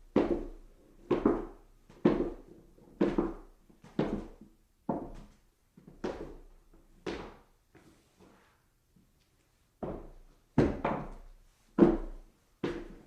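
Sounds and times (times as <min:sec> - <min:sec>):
footsteps on stairs: 0:09.8 - 0:13.0.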